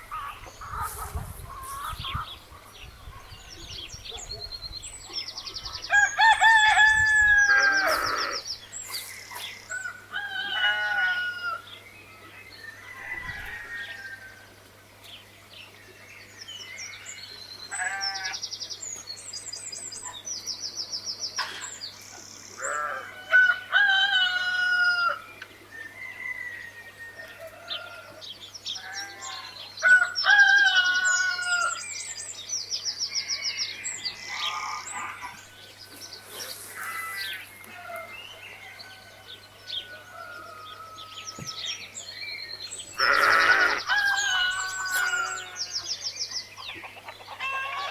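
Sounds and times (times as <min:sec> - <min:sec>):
chickens clucking: 0:00.0 - 0:03.3, 0:46.4 - 0:47.9
roosters crowing: 0:05.8 - 0:08.6, 0:09.5 - 0:14.6, 0:22.6 - 0:32.0, 0:33.0 - 0:47.9.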